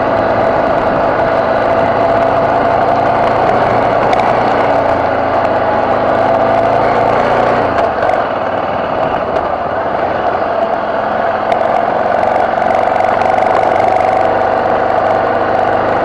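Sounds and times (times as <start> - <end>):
motorcycle engine running: 0.0 - 16.0
sharp ticks: 11.4 - 15.2.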